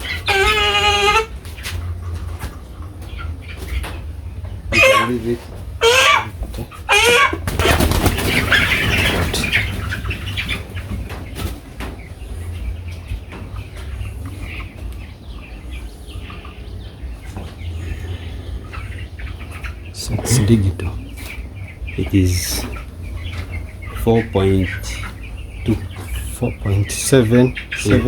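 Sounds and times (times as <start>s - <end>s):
chicken squawking: 0.0s - 28.0s
chicken wings flapping: 6.4s - 11.8s.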